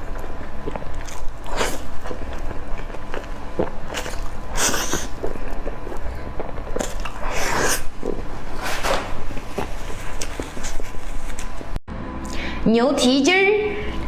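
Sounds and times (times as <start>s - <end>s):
wet chewing and biting: 0.0s - 8.5s.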